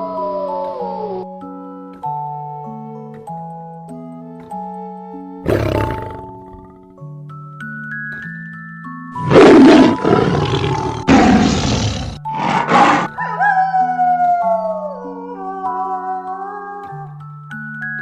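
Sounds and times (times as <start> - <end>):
soft chiming background music: 0.0 - 5.4, 7.0 - 11.6, 13.2 - 18.0
lion roaring: 5.5 - 6.9, 9.2 - 13.2
wavering animal howl: 9.2 - 17.1.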